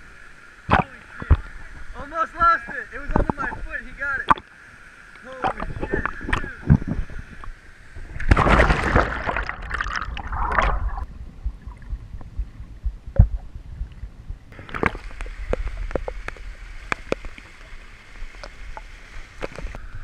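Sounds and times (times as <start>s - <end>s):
water sloshing and splashing: 5.2s - 19.8s.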